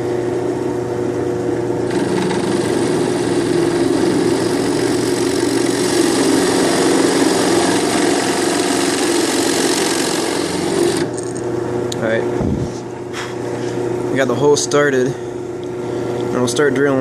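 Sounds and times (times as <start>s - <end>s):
drill press motor hum: 1.6s - 12.0s.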